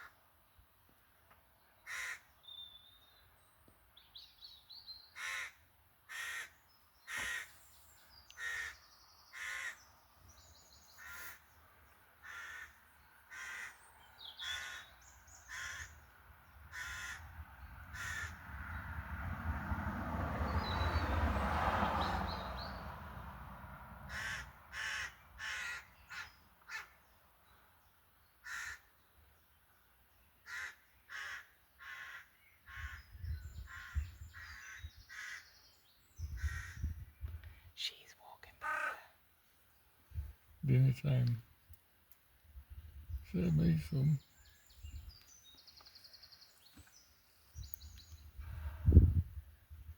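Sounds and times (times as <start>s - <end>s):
crows cawing: 1.8s - 2.3s, 5.2s - 7.6s, 8.3s - 9.8s, 11.0s - 11.5s, 12.2s - 13.8s, 14.4s - 16.1s, 16.7s - 18.6s, 24.1s - 27.0s, 28.4s - 28.9s, 30.4s - 33.1s, 33.7s - 35.6s, 36.4s - 36.9s, 38.6s - 39.1s.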